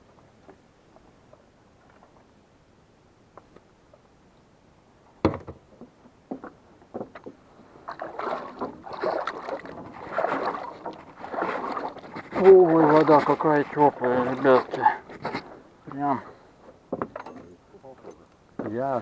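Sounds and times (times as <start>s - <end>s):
hand splashing in river water: 7.9s - 12.0s.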